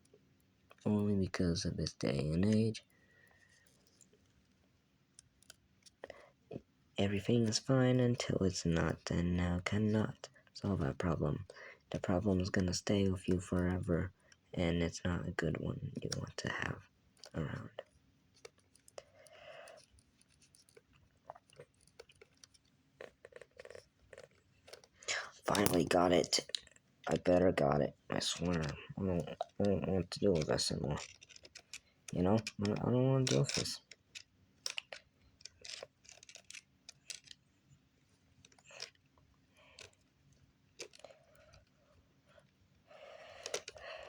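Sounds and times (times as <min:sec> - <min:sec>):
small plastic parts clicking: 0:16.0 - 0:27.3, 0:28.2 - 0:37.4, 0:38.4 - 0:41.8, 0:43.0 - 0:44.0.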